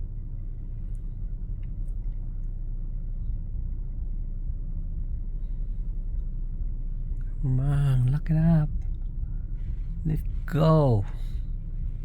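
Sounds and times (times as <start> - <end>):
car idling low rumble: 0.0 - 12.0.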